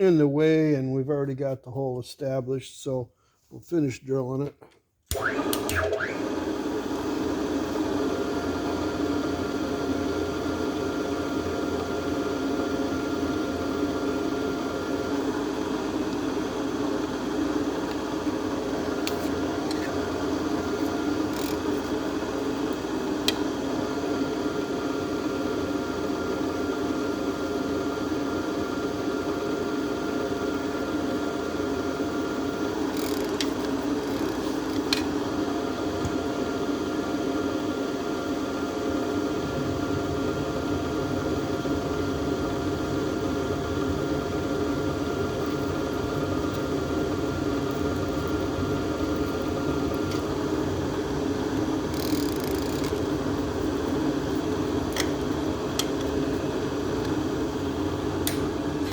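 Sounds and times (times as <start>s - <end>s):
power drill running: 5.1s - 10.3s, 13.1s - 24.4s, 32.4s - 35.8s, 44.3s - 58.9s.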